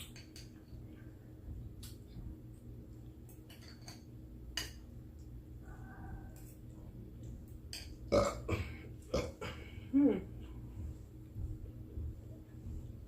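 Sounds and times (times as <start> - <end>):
cutlery clicking on a plate: 0.0 - 0.7, 3.3 - 4.8, 7.7 - 8.0
low steady hum: 0.0 - 13.0.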